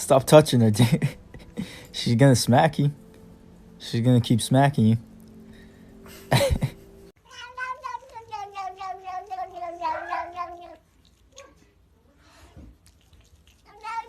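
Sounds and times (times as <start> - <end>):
cat yowling: 8.6 - 10.8.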